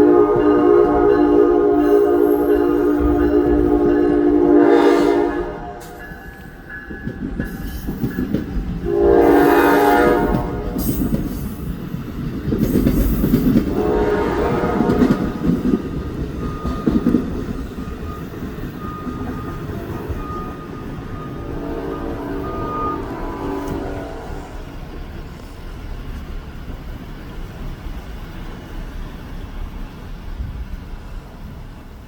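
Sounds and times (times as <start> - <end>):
train horn blast: 0.0 - 6.4, 8.8 - 11.2, 13.6 - 15.6, 19.7 - 24.9
train wheels clattering over rail joints: 5.8 - 9.0, 10.2 - 21.2.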